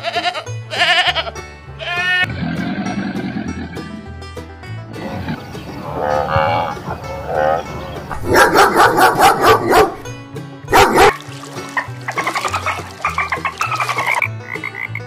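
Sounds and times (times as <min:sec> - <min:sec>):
background music: 0:00.0 - 0:15.0
farm animal calls: 0:04.9 - 0:09.8.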